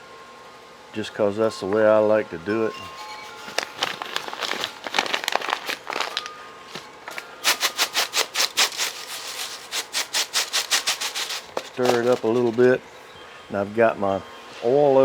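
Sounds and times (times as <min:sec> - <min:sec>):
breadcrumbs stirred in a bowl: 0:07.4 - 0:12.8.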